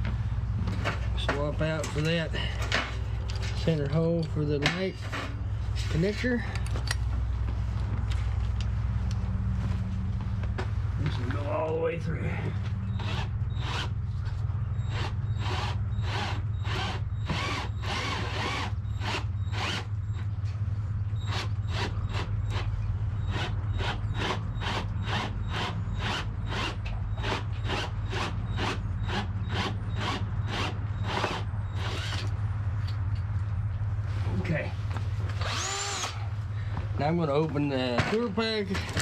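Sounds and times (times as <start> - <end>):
power drill boring through plastic: 14.9 - 19.9, 23.3 - 32.3, 35.4 - 36.2.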